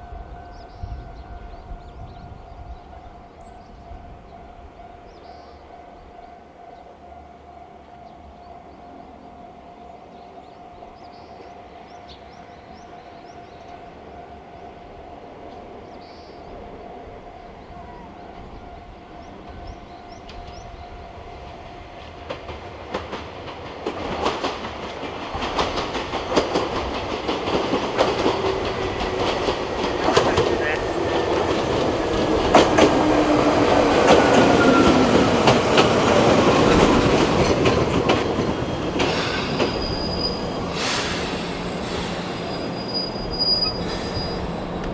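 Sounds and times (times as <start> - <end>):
train wheel clatter: 19.5 - 44.9.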